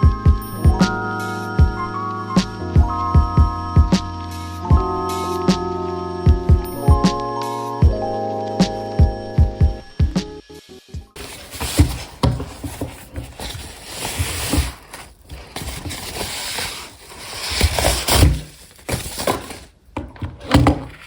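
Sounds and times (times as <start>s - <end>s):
knocks and thumps: 11.2s - 21.0s
packaging rustling: 11.2s - 21.0s.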